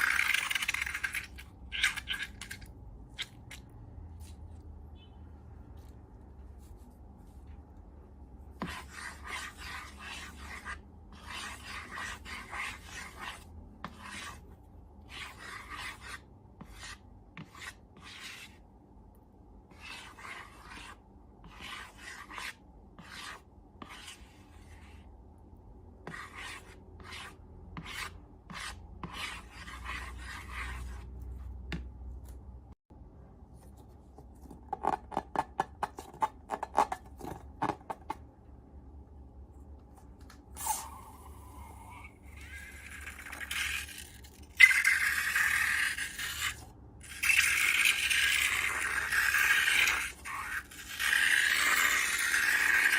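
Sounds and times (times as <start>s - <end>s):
rubbing or scraping strokes: 8.6s - 18.6s, 19.7s - 25.1s, 26.0s - 31.6s.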